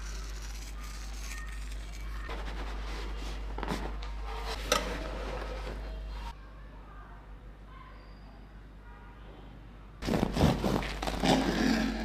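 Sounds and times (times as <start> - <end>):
handling and scraping noises: 0.0 - 6.4.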